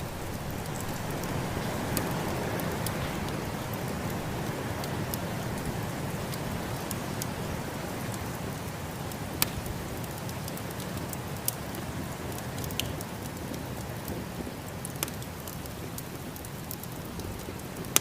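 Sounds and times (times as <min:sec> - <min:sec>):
snowstorm wind rushing: 0:00.0 - 0:08.6
wood fire crackling: 0:00.0 - 0:18.0
sharp pops from fire: 0:09.1 - 0:13.4, 0:14.8 - 0:18.0.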